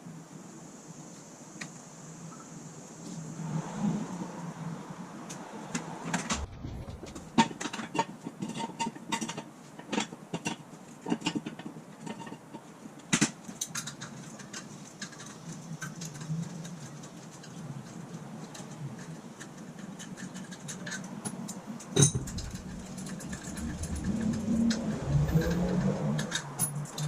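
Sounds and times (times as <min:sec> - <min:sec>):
low steady hum: 0:06.3 - 0:07.5, 0:22.0 - 0:27.0.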